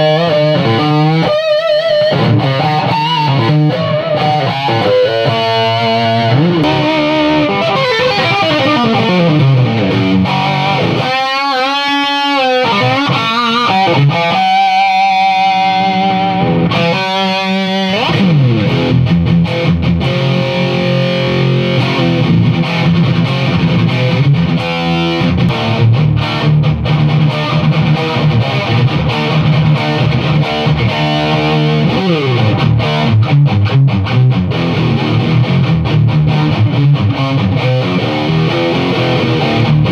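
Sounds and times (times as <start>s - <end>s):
distorted electric guitar: 0.0s - 39.9s.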